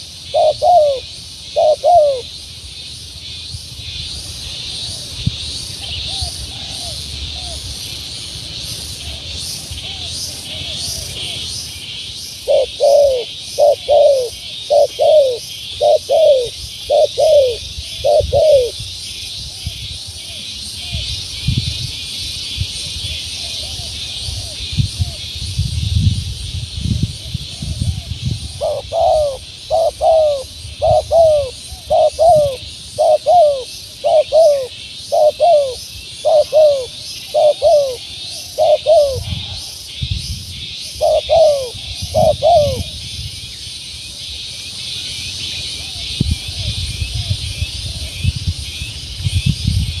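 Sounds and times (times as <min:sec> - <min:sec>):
dove cooing: 0:00.0 - 0:02.3, 0:05.8 - 0:07.6, 0:08.9 - 0:11.5, 0:12.4 - 0:18.8, 0:27.2 - 0:39.7, 0:40.8 - 0:43.0
steady high hiss: 0:00.0 - 0:27.6.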